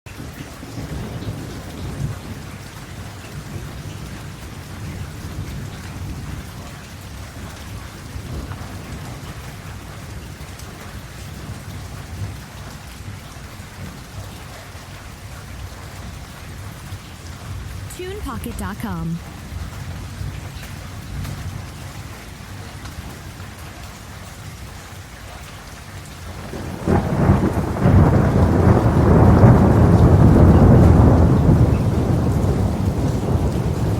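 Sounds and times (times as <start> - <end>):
steady rain: 0.1 - 33.9
rolling thunder rumble: 26.4 - 33.9.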